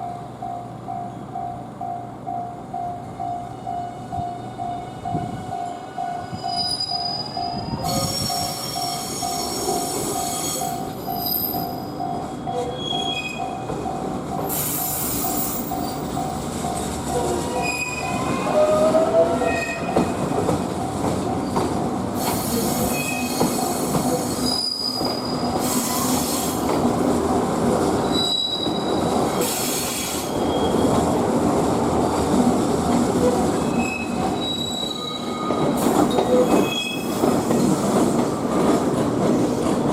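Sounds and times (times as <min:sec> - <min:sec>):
level-crossing warning bell ringing: 0:00.0 - 0:21.6
electric trains on rails: 0:00.0 - 0:39.9
high-pitched wheel squeal: 0:06.2 - 0:13.6, 0:17.4 - 0:20.0, 0:22.4 - 0:26.5, 0:28.0 - 0:30.9, 0:33.6 - 0:37.2.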